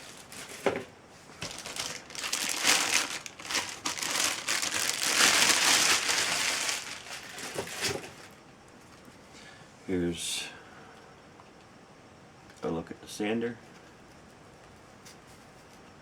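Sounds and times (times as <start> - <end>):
packaging crinkling and rustling: 0.0 - 8.4.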